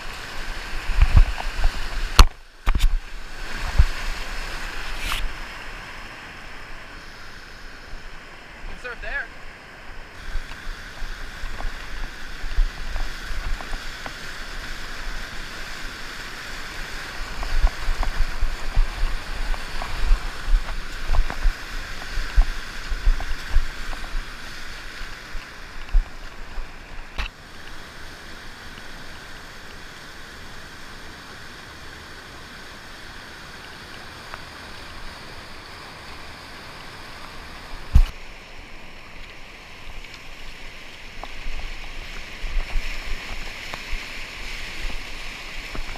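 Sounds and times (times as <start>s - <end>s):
water splashing: 0.0s - 29.6s
floodwater rushing: 0.0s - 45.9s.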